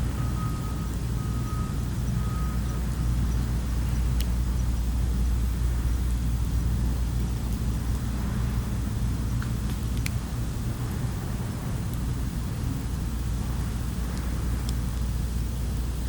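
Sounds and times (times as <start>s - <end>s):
reversing alarm beeping: 0.0s - 3.6s
low engine rumble: 0.0s - 16.0s.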